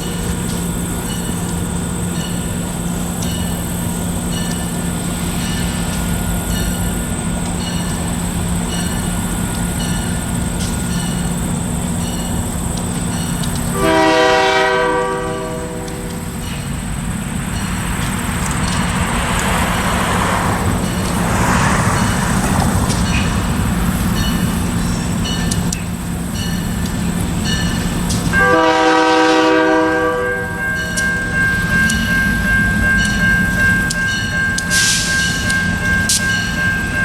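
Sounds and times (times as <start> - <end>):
diesel locomotive engines: 0.0 - 37.0
train wheels clicking over rail joints: 0.0 - 37.0
locomotive horn: 13.7 - 16.4, 28.3 - 33.3.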